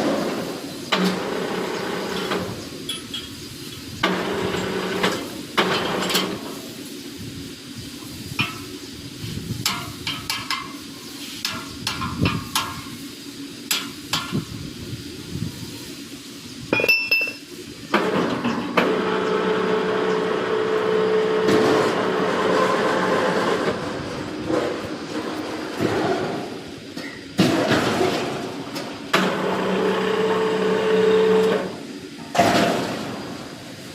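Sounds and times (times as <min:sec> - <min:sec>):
metallic clinks and knocks: 0:16.8 - 0:17.4
machine humming: 0:18.0 - 0:24.5, 0:27.7 - 0:32.3.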